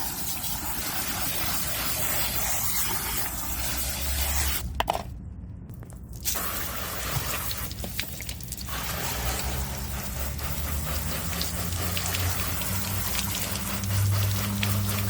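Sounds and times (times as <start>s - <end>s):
water spraying and splashing: 6.2s - 15.0s.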